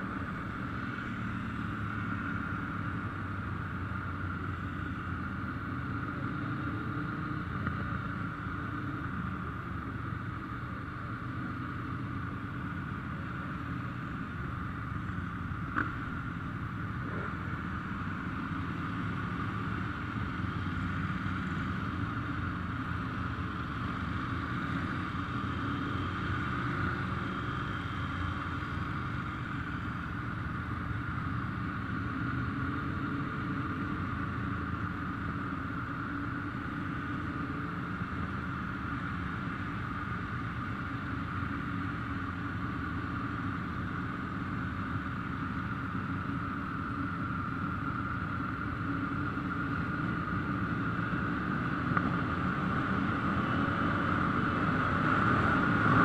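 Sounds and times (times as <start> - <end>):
motorcycle engines rumbling: 0.0 - 56.0.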